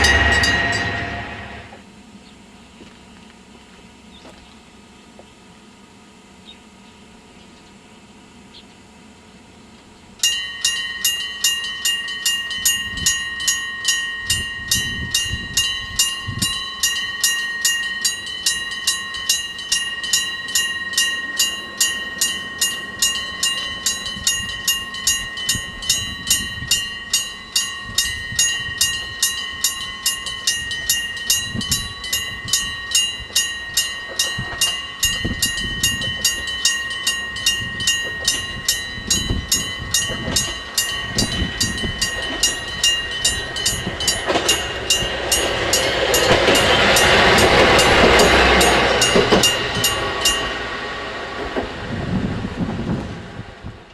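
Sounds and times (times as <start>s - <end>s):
electric alarm bell ringing: 0.0s - 1.7s, 10.2s - 50.7s.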